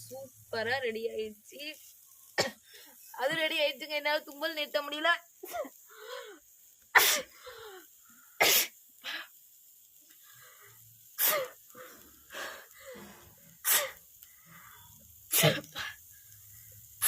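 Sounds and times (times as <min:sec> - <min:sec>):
woman sneezing: 0:07.0 - 0:07.3, 0:15.3 - 0:16.0.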